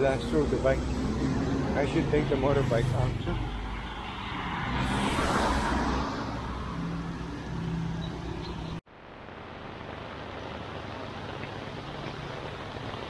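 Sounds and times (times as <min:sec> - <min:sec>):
motor vehicle passing: 0:00.0 - 0:08.8.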